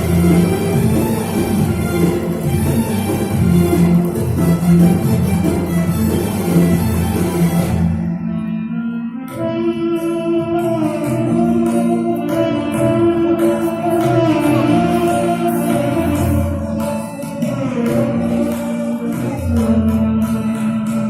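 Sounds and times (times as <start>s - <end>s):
music with long held notes: 0.0s - 21.0s.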